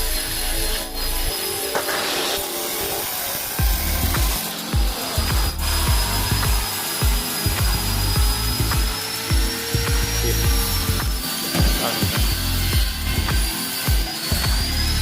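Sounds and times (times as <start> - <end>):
music with rhythmic bass beat: 3.5 - 15.0.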